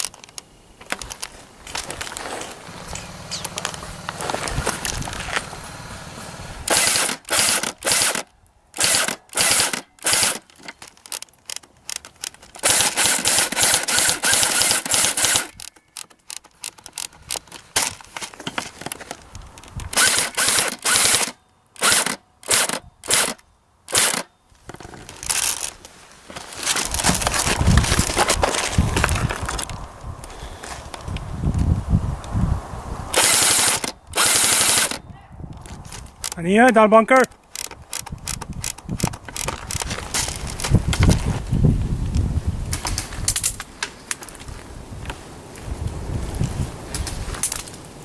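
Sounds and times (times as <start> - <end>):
airsoft guns firing bursts: 6.7 - 8.2, 8.8 - 10.4, 12.6 - 15.6, 20.0 - 24.2, 33.2 - 34.9.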